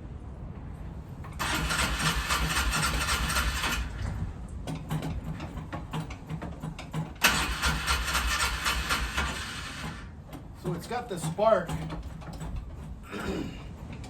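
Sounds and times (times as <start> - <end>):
engine cranking without starting: 1.2 - 14.0.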